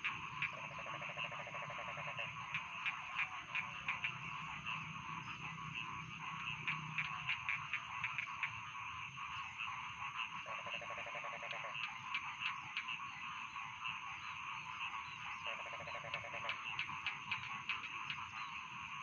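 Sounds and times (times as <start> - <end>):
frogs croaking in chorus: 0.0 - 19.0
low rapid rattling frog trill: 0.0 - 19.0.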